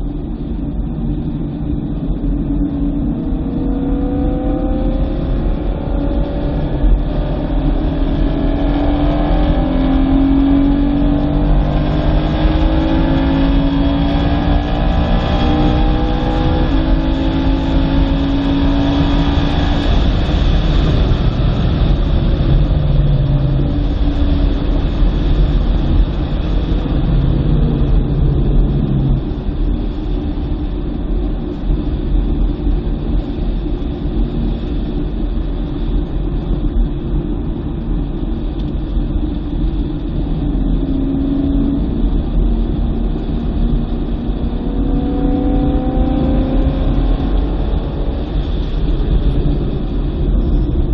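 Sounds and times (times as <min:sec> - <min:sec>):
low rumble: 0:00.0 - 0:50.9
car engine revving: 0:02.7 - 0:30.9, 0:39.8 - 0:50.9.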